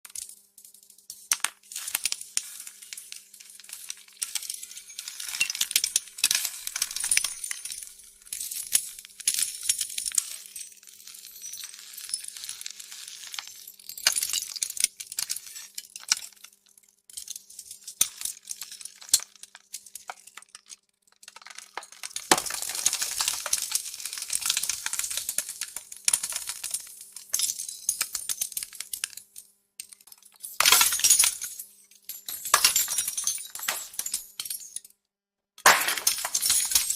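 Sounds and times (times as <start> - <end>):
rubble falling and clattering: 21.2 - 29.2, 30.0 - 34.8, 35.6 - 36.9.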